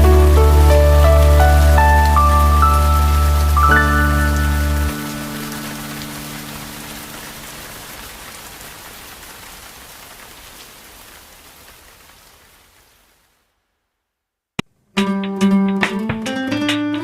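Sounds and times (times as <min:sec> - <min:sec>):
held music notes: 0:00.0 - 0:07.4
rain patter: 0:00.0 - 0:14.0.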